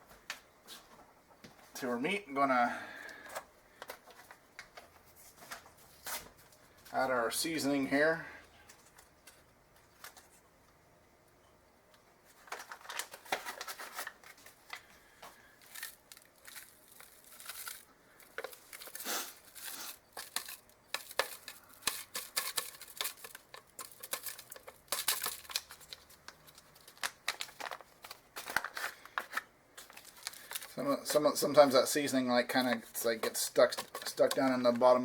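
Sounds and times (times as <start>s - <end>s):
packet tearing and crinkling: 15.6s - 35.0s.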